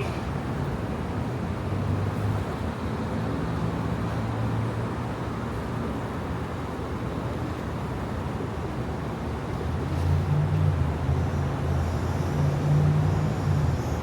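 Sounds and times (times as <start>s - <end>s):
city street traffic: 0.0s - 14.0s.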